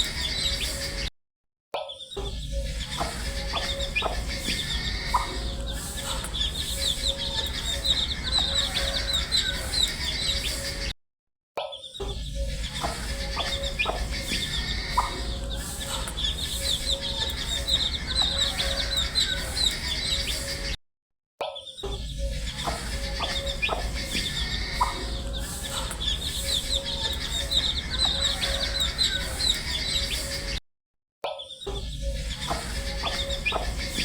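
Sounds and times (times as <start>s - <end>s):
baby chicks peeping: 0.0s - 1.0s, 2.6s - 10.9s, 12.4s - 20.7s, 22.1s - 30.6s, 32.0s - 34.0s.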